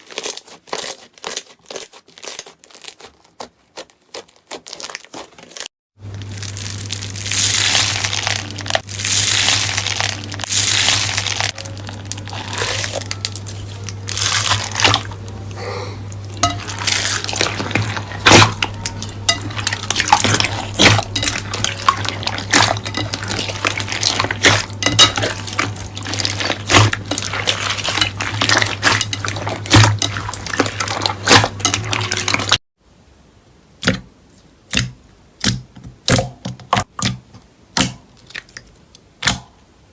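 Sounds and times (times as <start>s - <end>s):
slime squelching: 0.0s - 32.6s
low hum: 6.0s - 32.6s.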